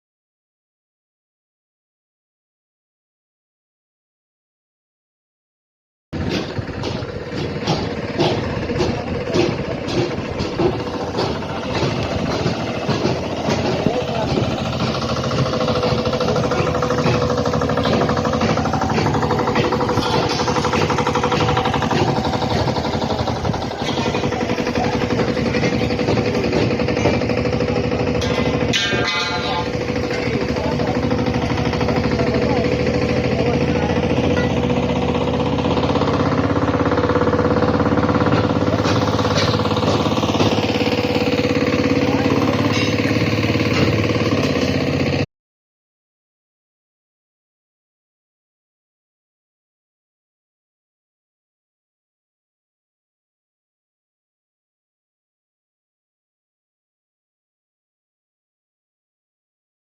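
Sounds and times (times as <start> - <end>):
sharp knocks: 6.2 - 44.9
machine hammering beat: 6.2 - 45.2.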